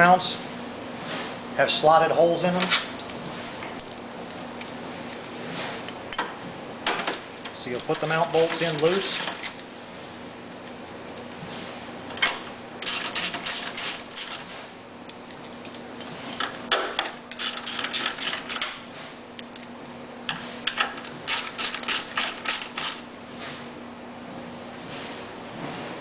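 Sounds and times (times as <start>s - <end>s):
ratchet wrench clicking: 12.8s - 14.4s, 17.3s - 18.7s, 21.3s - 23.0s.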